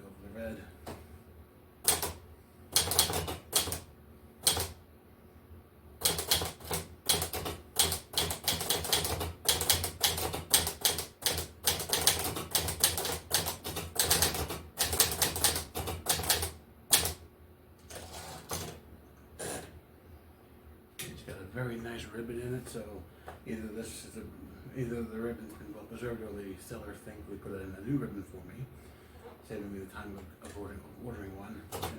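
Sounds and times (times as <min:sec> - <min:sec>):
manual typewriter keys clacking: 0:02.8 - 0:04.8, 0:06.0 - 0:17.2.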